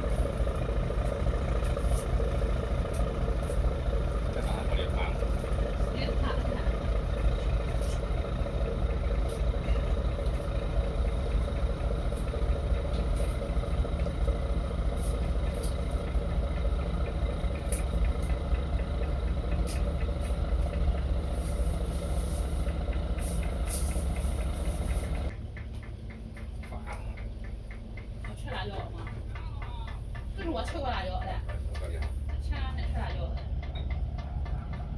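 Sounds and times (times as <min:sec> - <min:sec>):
diesel engine idling: 0:00.0 - 0:34.9.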